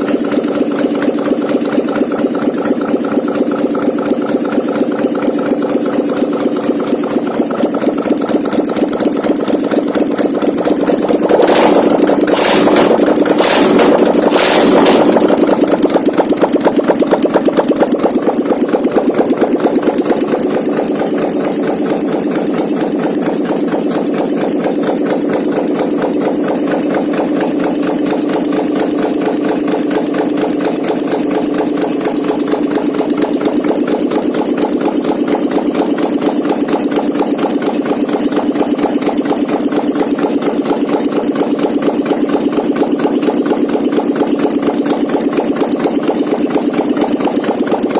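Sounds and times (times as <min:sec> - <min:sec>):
atv engine idling: 0:00.0 - 0:47.9
engine revving blips: 0:11.2 - 0:15.4.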